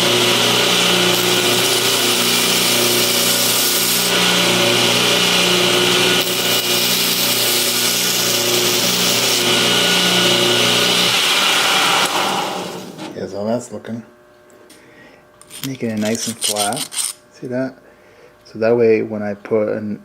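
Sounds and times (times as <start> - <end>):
belt grinder motor hum: 0.0 - 13.1, 15.4 - 17.3.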